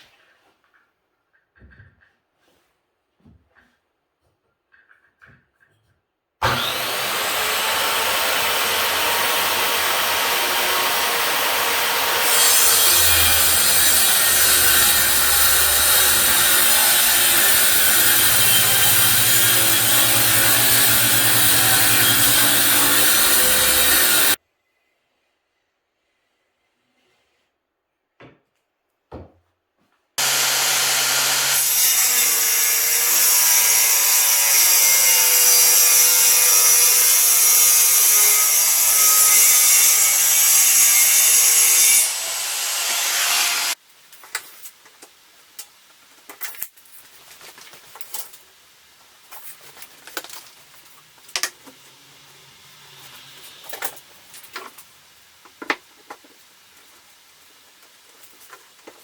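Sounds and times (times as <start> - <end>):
circular saw cutting wood: 6.4 - 24.4, 30.2 - 43.8, 51.9 - 53.9.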